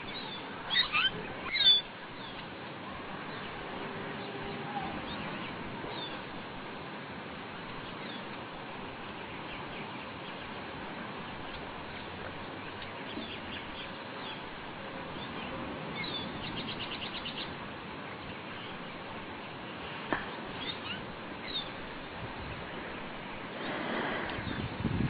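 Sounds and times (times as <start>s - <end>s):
small birds chirping: 0.0s - 2.5s, 4.2s - 6.4s, 7.6s - 24.8s
steady background hiss: 0.0s - 25.0s
rushing noise: 19.1s - 25.0s.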